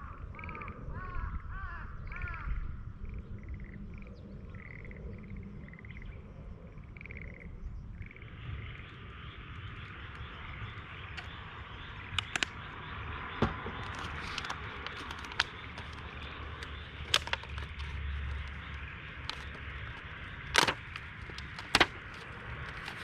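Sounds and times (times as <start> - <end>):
frog croaking: 0.0 - 23.0
sharp clicks: 12.1 - 12.6, 13.8 - 23.0.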